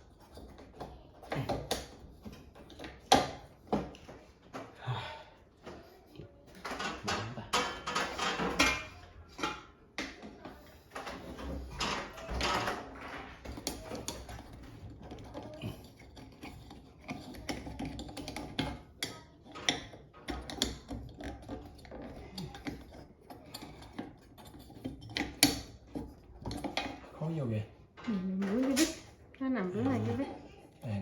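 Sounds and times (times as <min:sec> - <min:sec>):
small parts clicking and clattering: 0:05.5 - 0:27.2.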